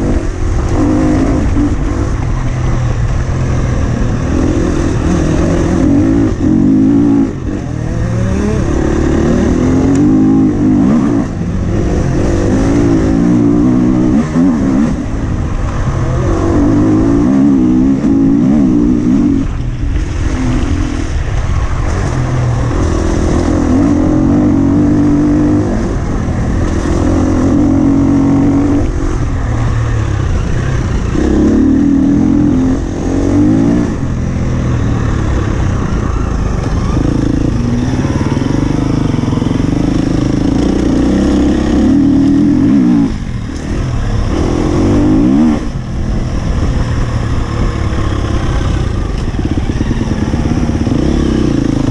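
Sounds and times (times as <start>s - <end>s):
motorcycle engine revving: 0.0s - 51.9s.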